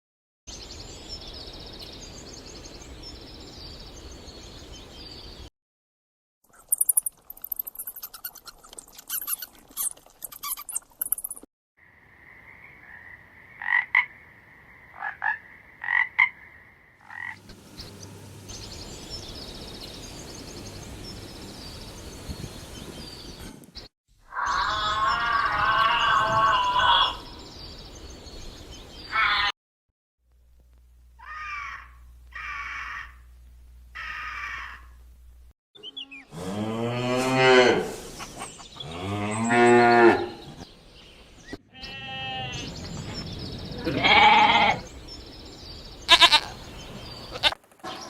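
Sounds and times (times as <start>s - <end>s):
sharp frog calls: 10.7s - 17.4s
frogs croaking: 11.8s - 22.0s.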